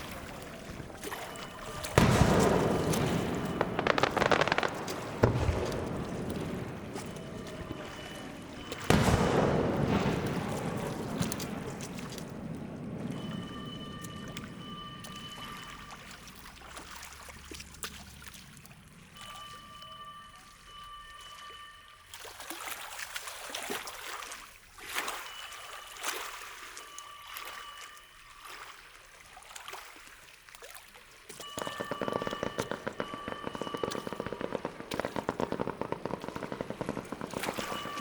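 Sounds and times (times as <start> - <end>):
fireworks crackling and popping: 0.0 - 14.2, 31.4 - 38.0.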